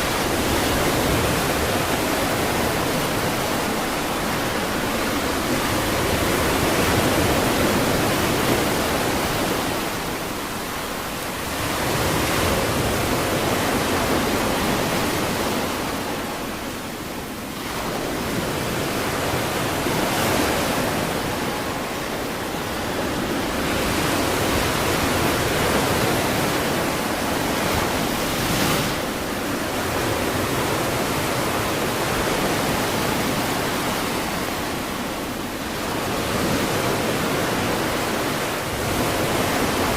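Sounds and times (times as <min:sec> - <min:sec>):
ocean surf on a beach: 0:00.0 - 0:39.9.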